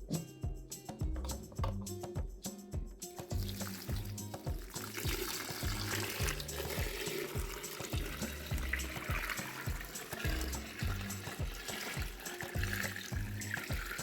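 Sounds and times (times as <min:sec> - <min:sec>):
background music with steady beat: 0:00.0 - 0:14.0
running water: 0:03.3 - 0:14.0.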